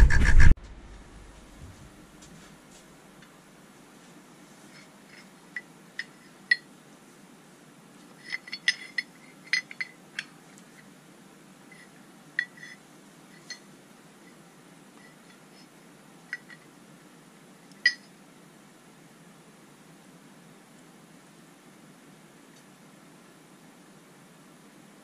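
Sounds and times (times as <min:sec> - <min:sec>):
faint steady hum: 0:00.0 - 0:25.0
metal parts clinking: 0:08.2 - 0:10.3, 0:13.4 - 0:13.6, 0:16.3 - 0:16.6.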